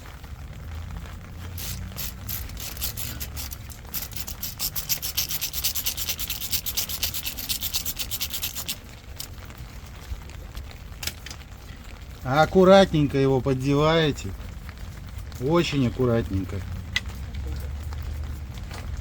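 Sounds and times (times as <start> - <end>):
hand ratchet clicking: 1.6 - 9.3.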